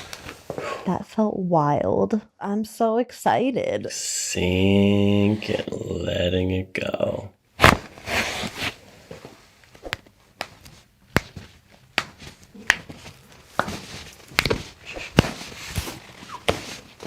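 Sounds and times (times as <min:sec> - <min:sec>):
soft rustling: 0:08.0 - 0:17.0.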